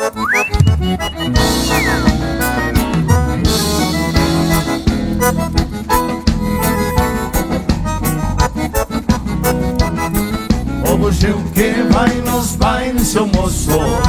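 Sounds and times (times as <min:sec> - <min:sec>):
reedy accordion melody: 0:00.0 - 0:12.0
band with steady beat: 0:00.0 - 0:14.0.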